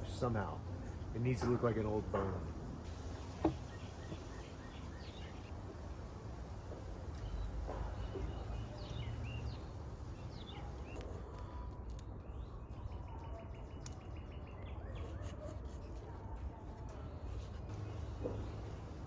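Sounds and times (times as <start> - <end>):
bird chirps: 3.3 - 5.5, 7.1 - 11.0.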